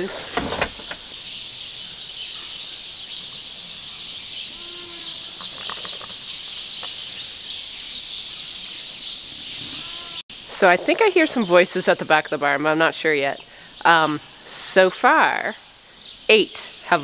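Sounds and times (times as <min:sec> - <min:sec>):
faint animal calls: 0:09.6 - 0:10.2.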